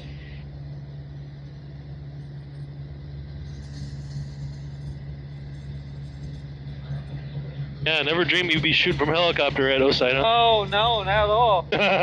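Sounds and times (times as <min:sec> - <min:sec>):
helicopter idling: 0:00.0 - 0:12.0.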